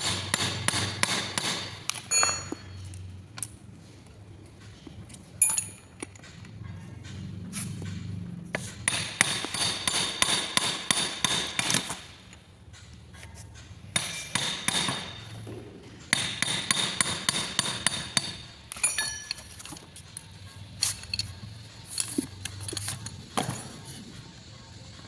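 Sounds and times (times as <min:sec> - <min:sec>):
hammer tapping metal: 0:00.0 - 0:02.8, 0:07.0 - 0:12.1, 0:13.9 - 0:15.4, 0:16.1 - 0:19.5.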